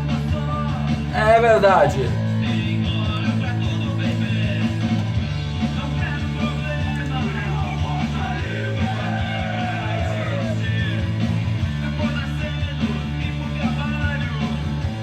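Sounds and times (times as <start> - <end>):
bass: 0.0 - 15.0
rock song: 0.0 - 15.0
person singing: 1.1 - 2.2.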